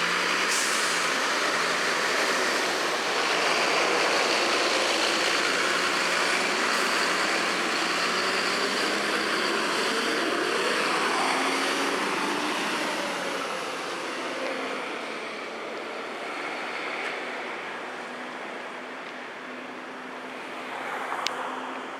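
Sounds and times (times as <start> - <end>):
bus diesel engine running: 0.0 - 20.4
road noise: 0.0 - 21.9
rising whine: 0.4 - 15.5.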